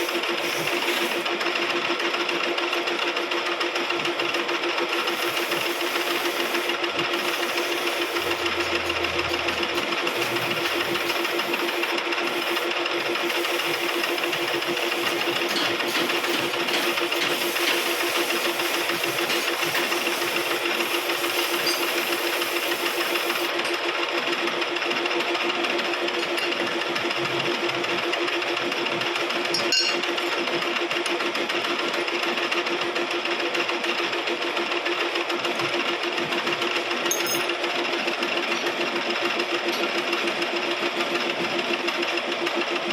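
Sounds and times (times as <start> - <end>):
lathe turning hiss: 0.0 - 1.3, 4.9 - 23.5
lathe motor hum: 0.0 - 29.4.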